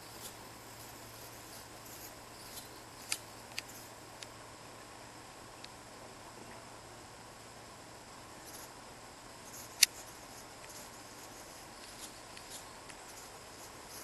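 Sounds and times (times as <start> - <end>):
faint high-pitched ticks: 0.0 - 4.4, 9.5 - 14.0
light rain hissing: 0.0 - 14.0.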